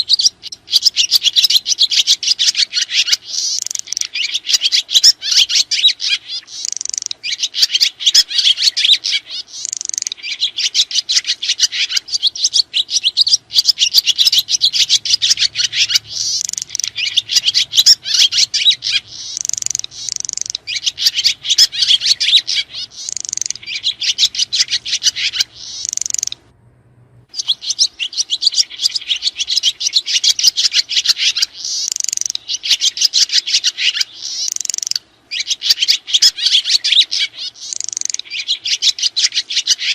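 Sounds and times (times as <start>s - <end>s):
swiftlets twittering: 12.3s - 26.4s.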